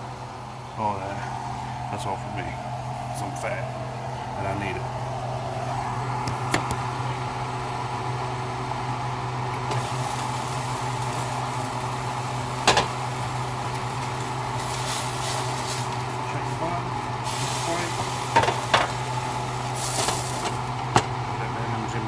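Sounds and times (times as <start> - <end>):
low machine hum: 0.0 - 22.0.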